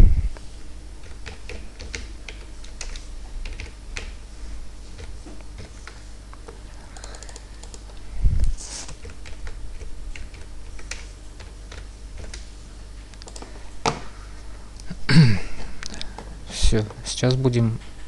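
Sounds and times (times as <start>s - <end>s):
typing on computer keyboard: 1.0s - 4.2s, 6.9s - 8.0s, 9.0s - 12.4s.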